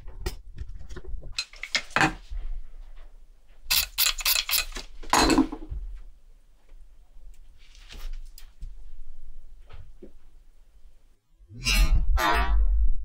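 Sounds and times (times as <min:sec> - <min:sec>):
metal tools clinking: 0:03.7 - 0:05.4.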